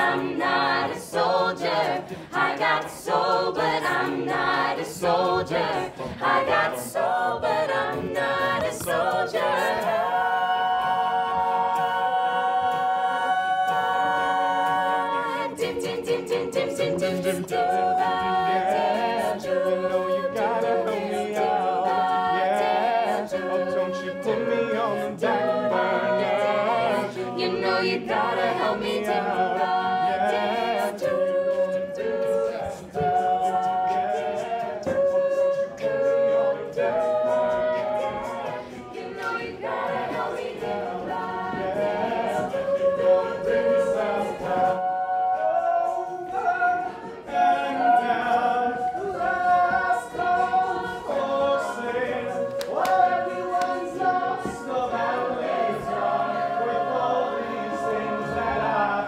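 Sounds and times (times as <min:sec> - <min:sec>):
regular beat: 0:00.0 - 0:23.8
choir singing held notes: 0:00.0 - 0:59.0.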